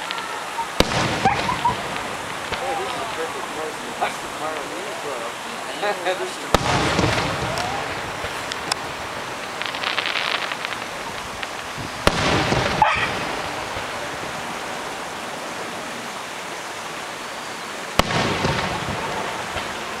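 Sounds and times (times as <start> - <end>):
fireworks sharp bang: 0.0 - 5.3, 6.1 - 14.4, 18.0 - 20.0
fireworks crackling: 0.0 - 20.0
fireworks hiss: 0.0 - 20.0.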